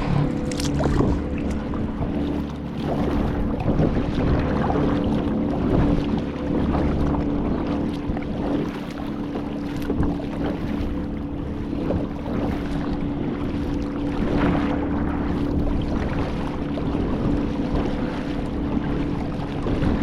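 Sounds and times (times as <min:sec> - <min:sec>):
motor humming: 0:00.0 - 0:10.1
water washing: 0:00.0 - 0:12.8
wind noise on microphone: 0:00.0 - 0:20.0.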